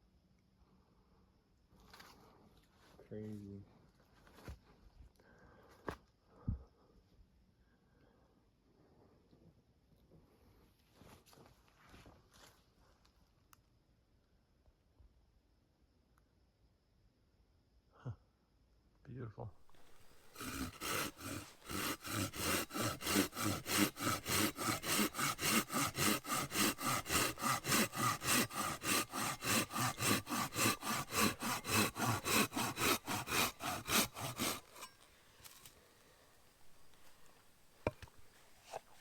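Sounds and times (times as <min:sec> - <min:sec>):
hand saw cutting wood: 0:19.6 - 0:39.0.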